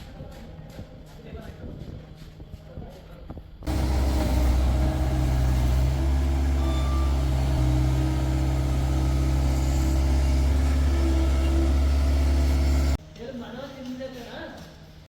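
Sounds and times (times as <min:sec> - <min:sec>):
diesel engine running steadily: 0:03.7 - 0:13.0.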